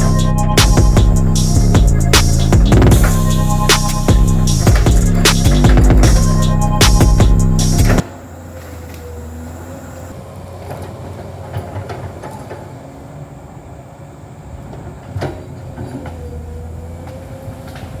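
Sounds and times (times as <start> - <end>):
metal clanks: 0.0 - 8.2
excavator engine running: 0.0 - 18.0
hydraulic whine: 0.0 - 18.0
loud knock: 0.6 - 8.0.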